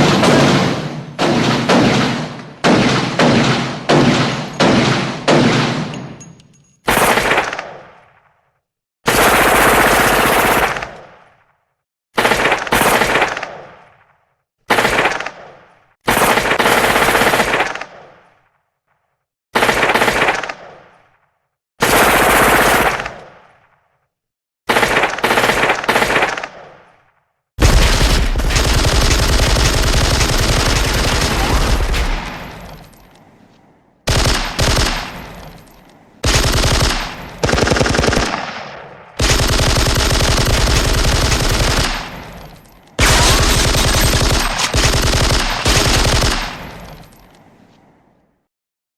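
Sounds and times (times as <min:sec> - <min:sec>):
machine-gun bursts: 0:27.6 - 0:32.9, 0:34.1 - 0:35.6, 0:36.2 - 0:38.5, 0:39.2 - 0:47.1.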